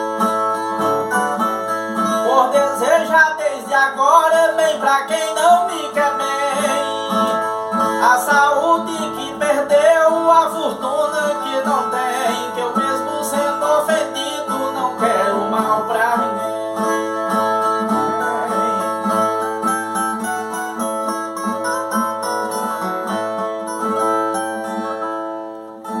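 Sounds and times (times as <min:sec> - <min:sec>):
viola plucked and strummed: 0:00.0 - 0:26.0
man singing: 0:01.0 - 0:17.2, 0:17.8 - 0:19.5.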